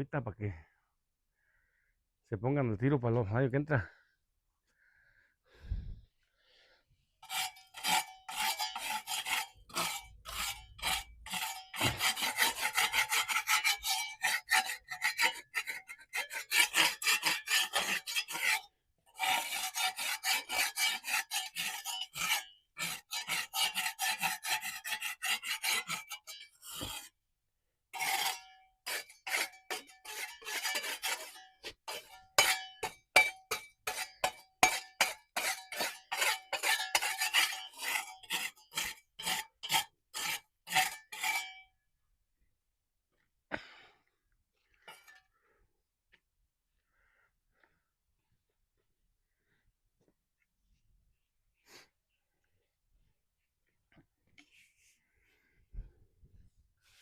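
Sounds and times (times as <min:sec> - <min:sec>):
metal tool scraping gritty surface: 0:07.2 - 0:27.2, 0:27.9 - 0:41.7, 0:44.8 - 0:45.3.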